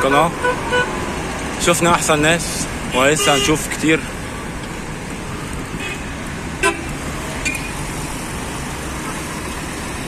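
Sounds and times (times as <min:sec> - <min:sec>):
road traffic noise: 0:00.0 - 0:10.0
horn toot: 0:03.0 - 0:03.6.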